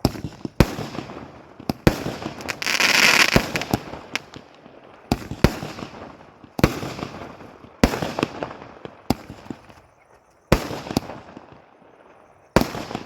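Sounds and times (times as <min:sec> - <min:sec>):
firework bangs: 0:00.0 - 0:09.7
firework crackle: 0:00.0 - 0:09.7.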